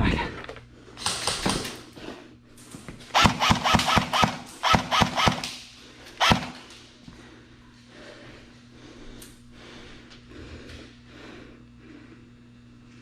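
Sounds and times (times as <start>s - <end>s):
airsoft gun shots: 3.1s - 5.6s, 6.2s - 6.6s.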